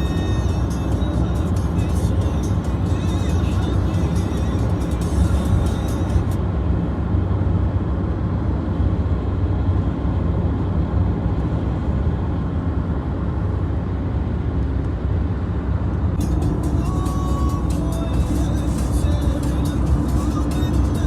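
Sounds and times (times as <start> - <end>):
car driving rumble: 0.0 - 21.0.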